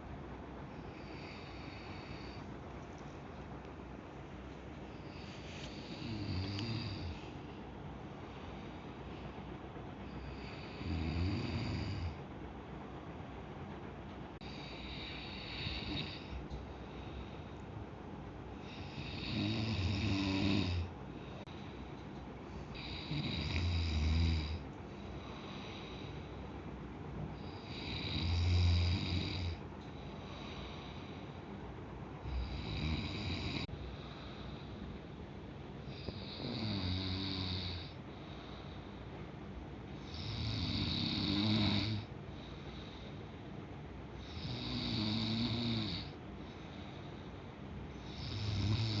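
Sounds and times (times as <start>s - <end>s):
person snoring: 5.0s - 7.4s, 10.1s - 12.2s, 14.4s - 16.4s, 18.6s - 21.4s, 22.7s - 26.1s, 27.4s - 29.6s, 32.2s - 34.7s, 35.8s - 38.0s, 40.0s - 42.1s, 44.2s - 46.2s, 48.0s - 49.0s.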